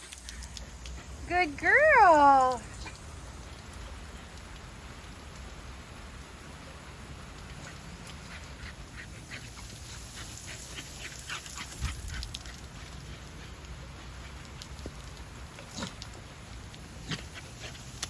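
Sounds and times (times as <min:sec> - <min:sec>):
rain hissing: 0:00.0 - 0:18.0.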